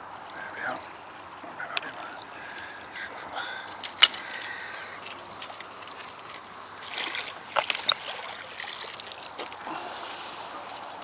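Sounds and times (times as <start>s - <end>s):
sharp clicks: 3.7s - 6.0s
fish splashing water: 5.6s - 11.0s.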